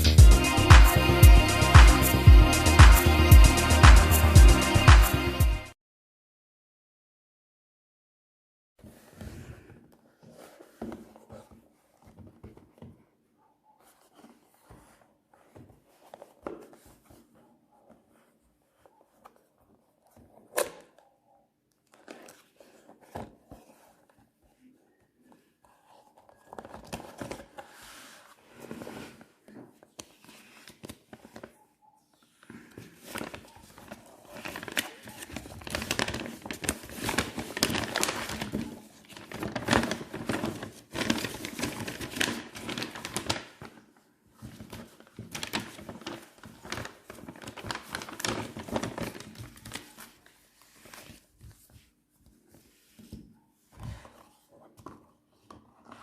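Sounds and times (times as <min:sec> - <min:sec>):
plastic and paper crinkling: 0:21.8 - 0:31.6, 0:32.2 - 0:56.0.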